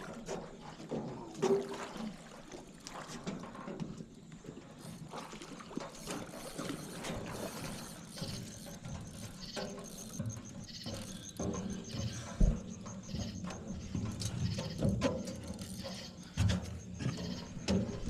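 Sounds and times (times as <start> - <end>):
clicking rattling and scraping: 5.8 - 18.0.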